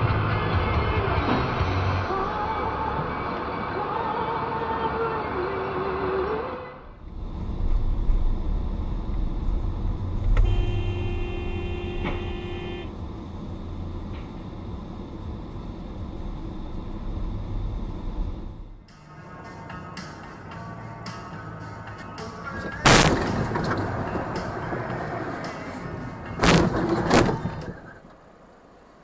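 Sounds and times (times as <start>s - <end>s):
car driving rumble: 6.6s - 20.0s
car horn blast: 10.2s - 13.0s.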